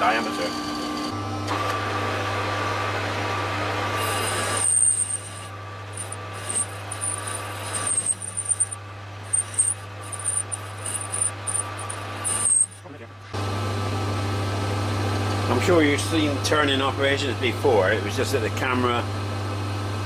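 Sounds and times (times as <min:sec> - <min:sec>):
lathe motor hum: 0:00.0 - 0:12.7.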